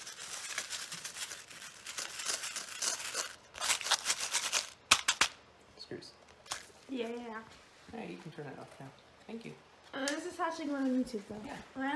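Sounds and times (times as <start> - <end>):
packaging crinkling and rustling: 0.0 - 5.4.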